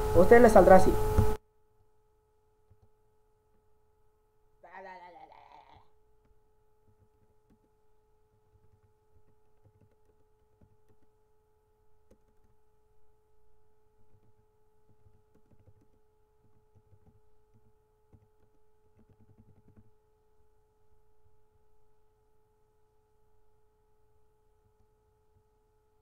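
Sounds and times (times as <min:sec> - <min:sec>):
faint electrical tone: 0:00.0 - 0:05.4
small ticks: 0:05.5 - 0:11.2, 0:12.0 - 0:13.1, 0:14.0 - 0:20.6.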